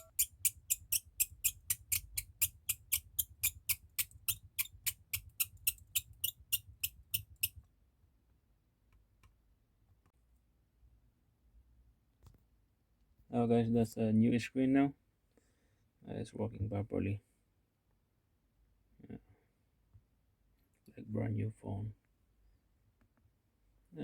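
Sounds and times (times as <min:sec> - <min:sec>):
sharp evenly spaced clicks: 0:00.0 - 0:07.5.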